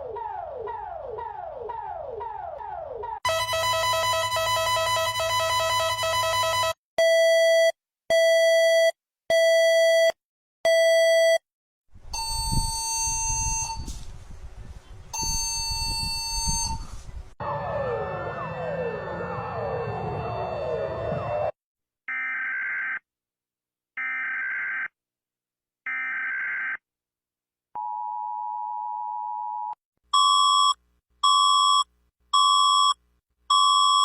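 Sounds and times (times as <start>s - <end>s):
harsh buzzing alarm tone: 3.3s - 6.8s
loud alarm beeps: 12.2s - 13.9s, 15.2s - 16.8s, 32.4s - 34.0s.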